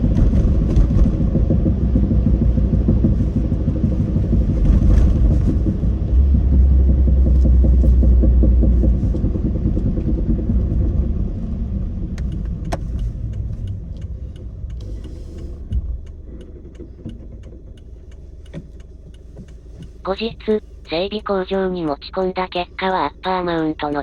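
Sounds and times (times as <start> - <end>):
car road and engine rumble: 0.0 - 24.0
light ticking: 5.9 - 24.0.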